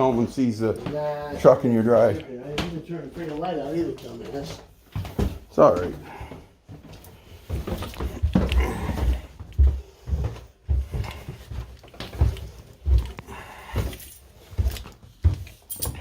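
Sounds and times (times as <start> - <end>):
heavy footsteps: 0.0 - 16.0.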